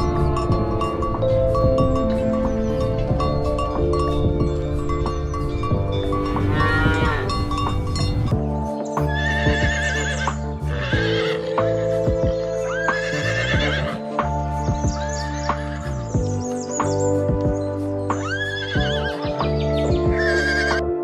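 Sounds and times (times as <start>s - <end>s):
background music: 0.0s - 21.0s
farm animal quavering cries: 6.2s - 7.6s, 9.1s - 11.8s, 20.1s - 20.8s.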